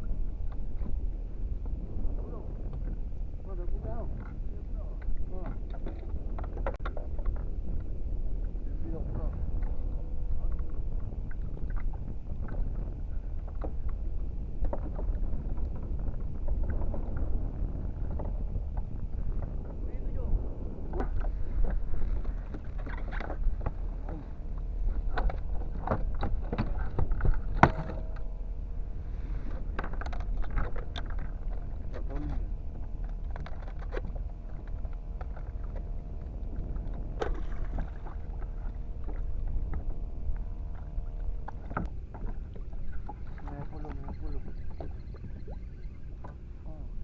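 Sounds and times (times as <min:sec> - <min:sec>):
steady low rumble: 0:00.0 - 0:47.0
knocks and clicks from kayak hull: 0:05.0 - 0:07.9, 0:10.5 - 0:14.0, 0:14.6 - 0:17.4, 0:20.9 - 0:28.3, 0:29.5 - 0:45.6.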